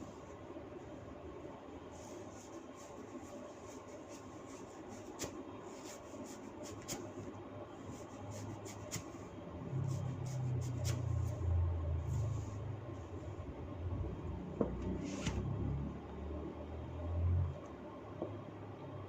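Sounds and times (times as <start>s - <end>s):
hands rustling through hair: 2.0s - 9.2s.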